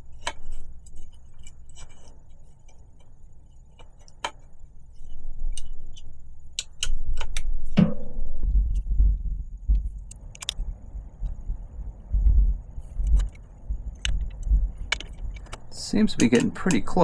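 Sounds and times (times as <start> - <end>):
metallic clicks of wrenches: 14.0 - 17.0.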